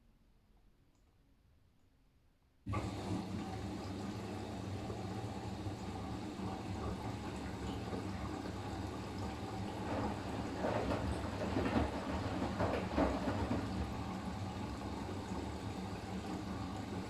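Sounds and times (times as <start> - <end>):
washing machine motor hum: 2.7 - 17.0
water and laundry sloshing: 2.7 - 17.0.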